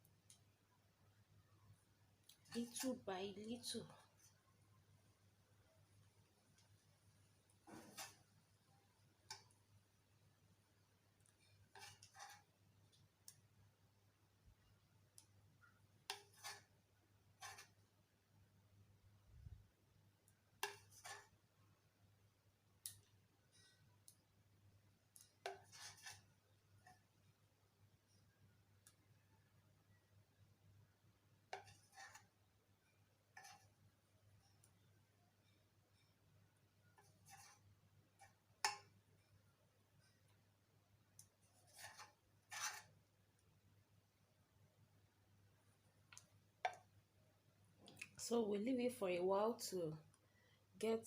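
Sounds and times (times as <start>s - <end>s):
short handling scrapes: 7.6s - 8.3s, 11.7s - 12.5s, 20.6s - 21.3s, 25.4s - 26.3s, 41.5s - 42.9s.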